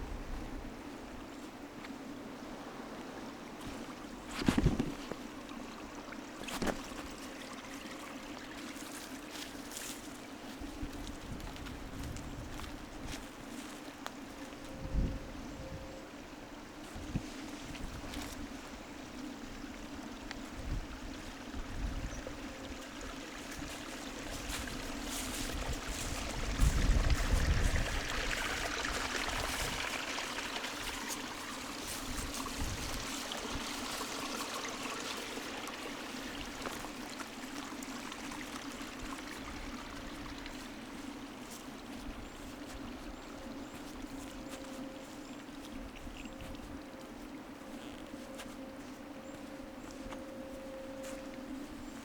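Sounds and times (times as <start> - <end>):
wind buffeting microphone: 10.7 - 13.3, 14.7 - 15.9, 20.4 - 22.6, 23.5 - 34.2.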